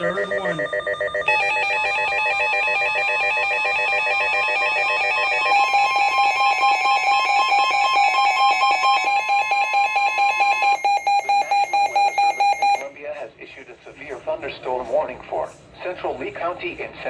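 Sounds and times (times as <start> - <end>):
piercing warning alarm tone: 0.0 - 12.9.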